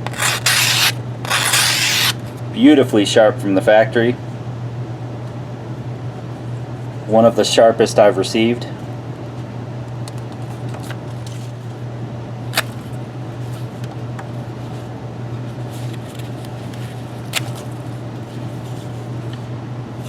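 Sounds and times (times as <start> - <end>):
knife slicing webbing: 0.0 - 2.2
steady low hum: 0.0 - 20.0.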